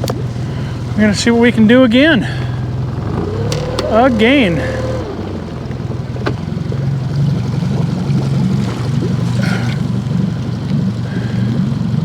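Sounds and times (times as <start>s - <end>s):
engine droning: 0.0s - 12.0s.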